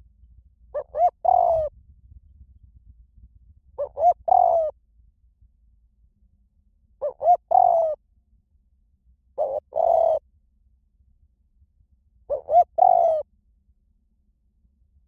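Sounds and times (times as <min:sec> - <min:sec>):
dove cooing: 0:00.7 - 0:01.7, 0:03.8 - 0:04.8, 0:07.0 - 0:08.0, 0:09.4 - 0:10.2, 0:12.3 - 0:13.2.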